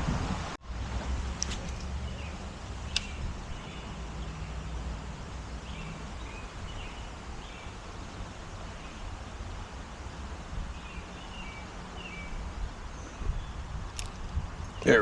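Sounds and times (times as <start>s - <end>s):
wind rumble on microphone: 0.0s - 11.2s, 12.2s - 15.0s
sharp clicks: 1.4s - 3.7s.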